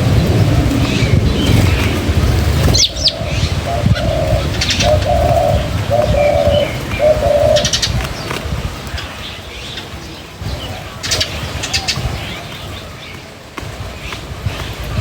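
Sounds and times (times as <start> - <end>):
low rumble: 0.0 - 7.0
dove cooing: 0.0 - 9.2
small birds chirping: 0.0 - 15.0.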